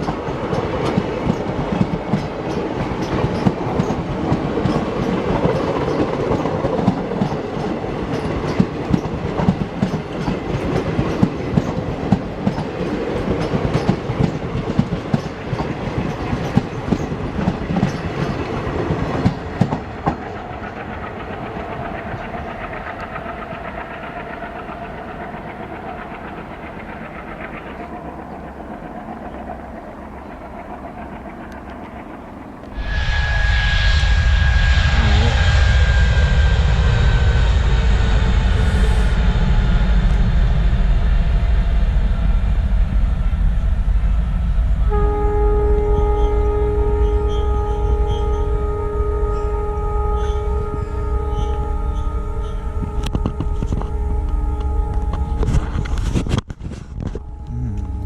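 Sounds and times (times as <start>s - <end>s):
train wheels clattering: 0.0s - 33.0s, 50.2s - 57.2s
smooth train rumble: 0.0s - 58.0s.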